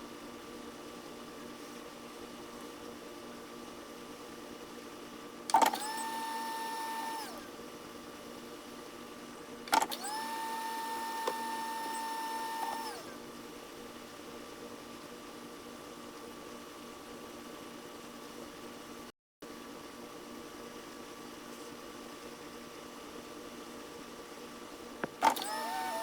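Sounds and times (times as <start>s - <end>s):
small electric motor whining: 5.7s - 7.4s, 10.0s - 13.1s, 25.2s - 26.0s.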